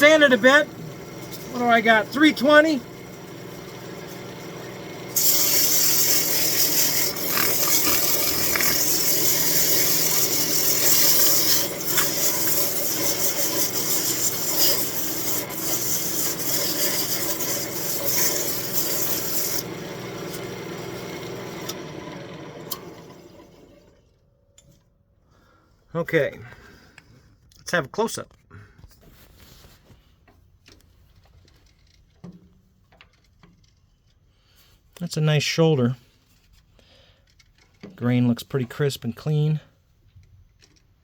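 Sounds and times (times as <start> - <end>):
wood lathe humming: 0.0 - 24.0
sandpaper sanding wood: 5.1 - 20.4.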